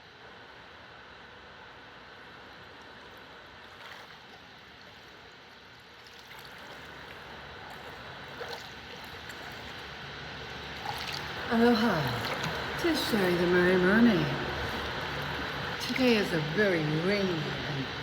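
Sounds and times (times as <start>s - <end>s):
small water splashes: 3.6s - 16.6s
water trickling: 3.6s - 18.0s.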